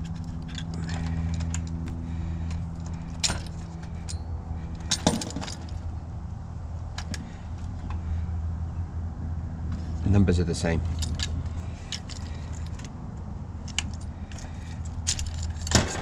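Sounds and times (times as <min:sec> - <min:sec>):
steady low hum: 0:00.0 - 0:16.0
metallic clicks of tools: 0:13.6 - 0:16.0.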